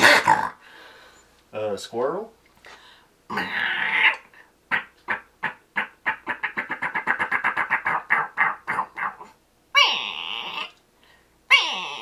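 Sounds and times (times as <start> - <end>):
man imitating squirrel barks: 0.0 - 0.6, 3.3 - 10.7.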